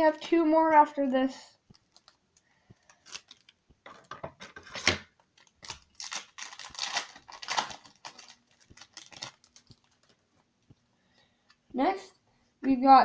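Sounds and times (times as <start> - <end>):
plastic packaging crinkling: 0.7 - 10.4.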